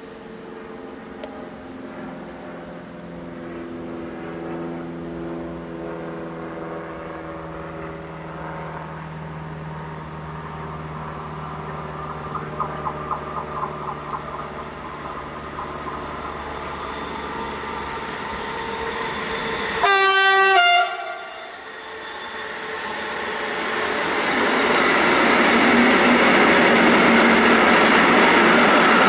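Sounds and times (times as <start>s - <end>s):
train hum: 0.0s - 29.0s
train wheels clattering over rail joints: 11.4s - 18.2s.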